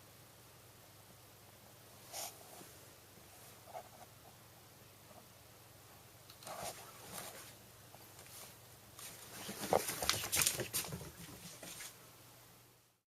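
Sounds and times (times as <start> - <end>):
rustling and scuffling: 6.4 - 12.0.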